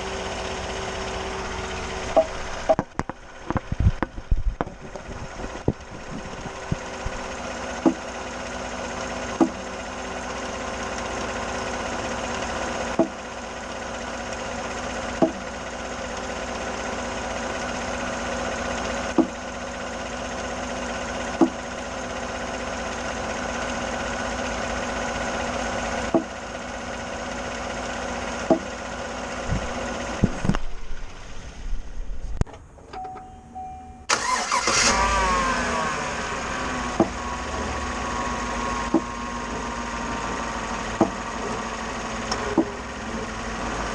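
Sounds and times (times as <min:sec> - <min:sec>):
engine idling hum: 0:00.0 - 0:43.9
sharp pops from steering: 0:13.0 - 0:13.2, 0:15.2 - 0:15.4, 0:19.1 - 0:19.4, 0:26.1 - 0:26.3, 0:36.9 - 0:37.2, 0:38.8 - 0:39.2, 0:40.9 - 0:41.2.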